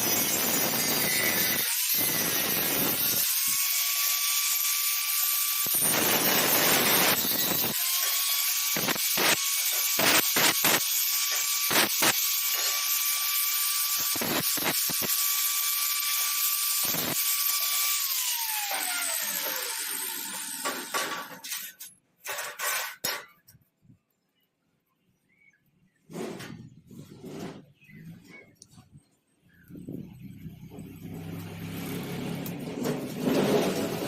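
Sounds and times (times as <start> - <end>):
power tool whining: 0.0 - 21.6, 30.2 - 34.0.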